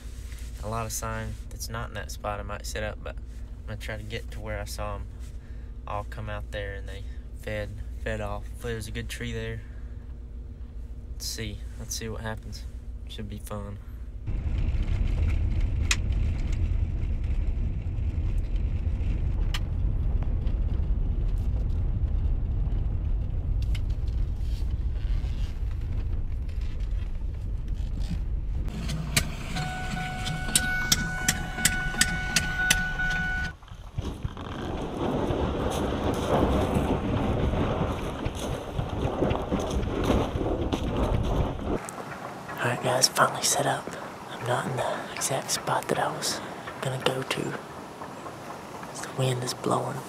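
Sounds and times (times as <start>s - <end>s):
car driving rumble: 0.0s - 50.0s
steady tone with ticking: 29.5s - 33.6s.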